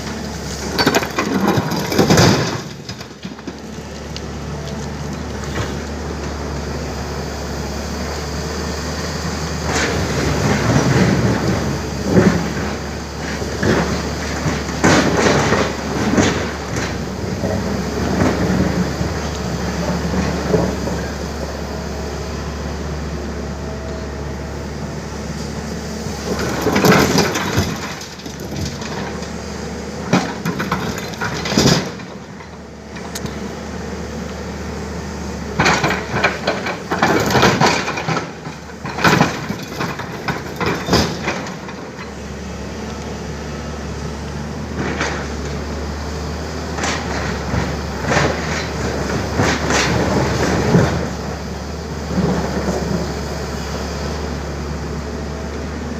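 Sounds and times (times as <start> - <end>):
excavator diesel engine running: 0.0 - 55.9
rocks knocking and clattering: 0.6 - 6.0, 26.2 - 29.4, 30.0 - 33.4, 35.6 - 42.2.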